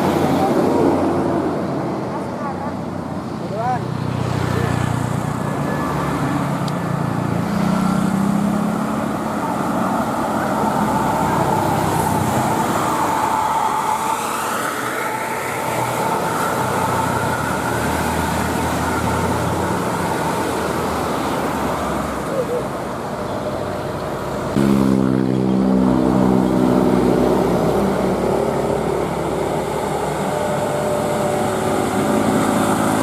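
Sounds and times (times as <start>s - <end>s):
road traffic passing: 0.0s - 33.0s
vehicle whine: 0.0s - 33.0s
bus engine running low: 4.5s - 33.0s.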